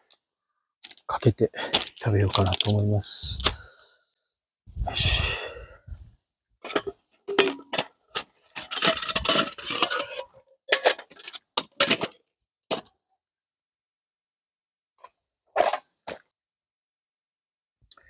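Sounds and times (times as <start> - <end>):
tableware clinking and clattering: 6.6 - 12.2.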